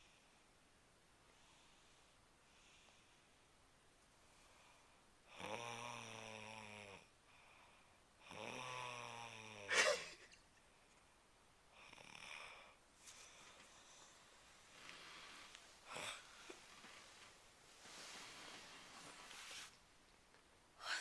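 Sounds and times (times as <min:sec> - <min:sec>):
soft breath: 0:01.3 - 0:03.5, 0:04.2 - 0:05.1, 0:12.4 - 0:19.8, 0:20.8 - 0:21.0
woman snoring: 0:05.3 - 0:07.1, 0:08.2 - 0:09.8, 0:15.8 - 0:16.6.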